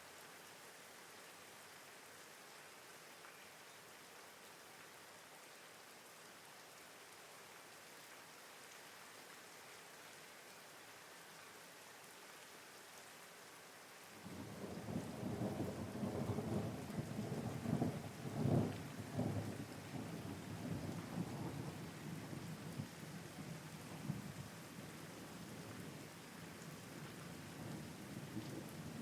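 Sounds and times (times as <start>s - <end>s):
steady rain: 0.0s - 29.0s
thunder rumbling: 14.2s - 21.7s.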